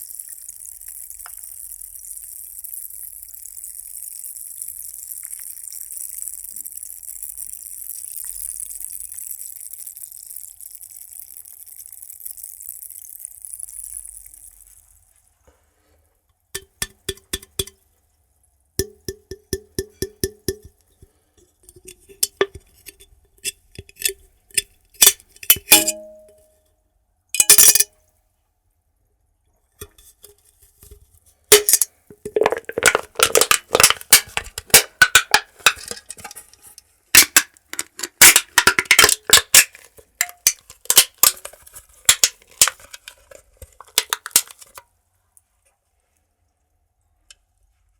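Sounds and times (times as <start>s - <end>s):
ice cubes clinking in glass: 25.4s - 26.4s, 27.4s - 27.9s, 31.5s - 36.5s, 37.2s - 44.8s.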